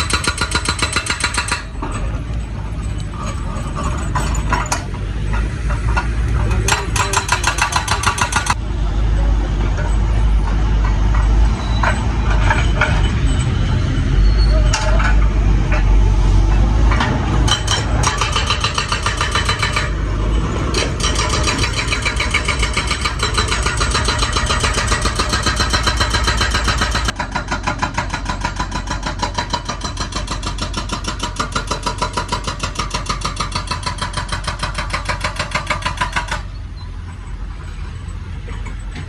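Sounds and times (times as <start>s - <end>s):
hydraulic breaker hammering rock: 0.0s - 1.8s, 5.4s - 8.6s, 17.5s - 20.0s, 20.7s - 36.5s
excavator engine running: 15.2s - 33.0s.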